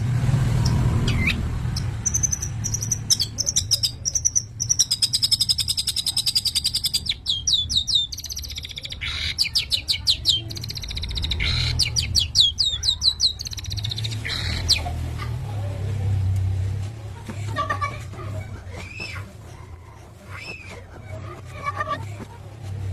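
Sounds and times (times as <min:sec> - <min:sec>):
bird singing trills and whistles: 0:00.6 - 0:14.9.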